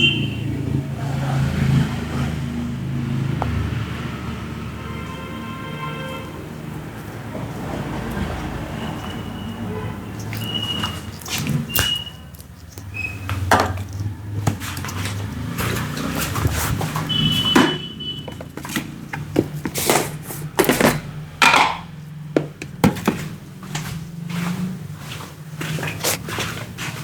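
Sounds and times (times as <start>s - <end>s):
hands rubbing skin and hair: 10.1s - 17.5s, 18.3s - 21.0s, 22.5s - 27.0s
hands patting and slapping skin: 10.2s - 17.6s.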